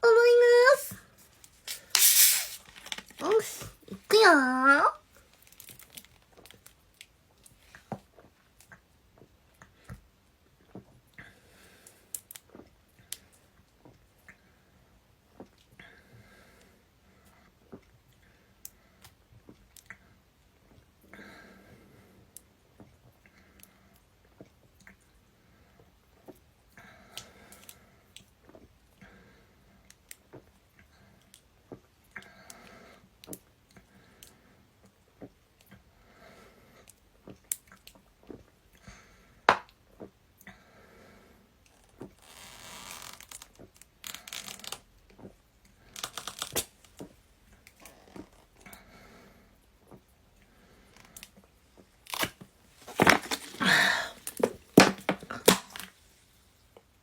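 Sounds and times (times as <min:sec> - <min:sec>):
person gulping a drink: 0:52.8 - 0:55.9.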